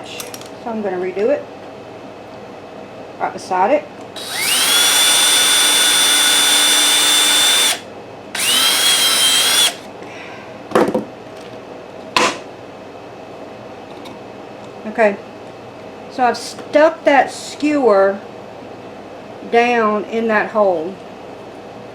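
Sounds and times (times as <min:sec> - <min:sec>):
electric drill whining: 0:04.2 - 0:07.8, 0:08.4 - 0:09.8.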